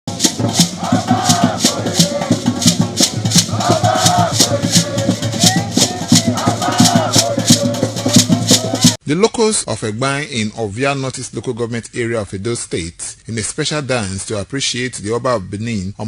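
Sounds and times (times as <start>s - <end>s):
shaker rattles beat: 0.1s - 9.0s
voices singing: 0.1s - 9.0s.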